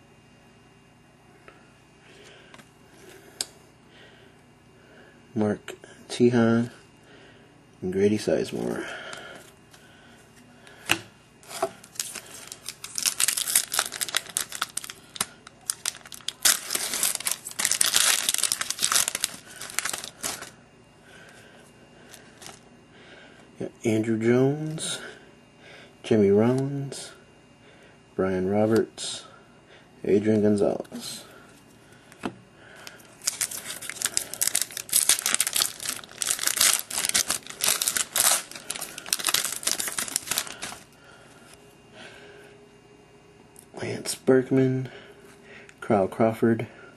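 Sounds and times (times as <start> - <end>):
plastic wrapper crinkling: 11.4 - 20.6, 22.1 - 22.6, 32.8 - 40.9.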